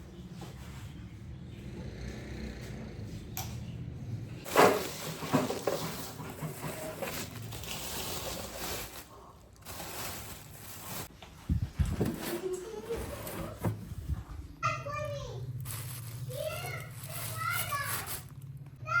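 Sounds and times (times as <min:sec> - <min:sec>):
packaging rustling: 0:04.5 - 0:11.1, 0:15.6 - 0:18.4.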